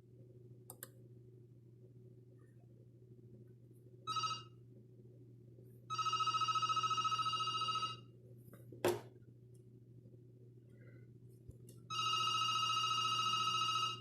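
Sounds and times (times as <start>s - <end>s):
cordless phone electronic ringtone: 4.1s - 4.6s, 5.9s - 8.1s, 11.9s - 14.0s.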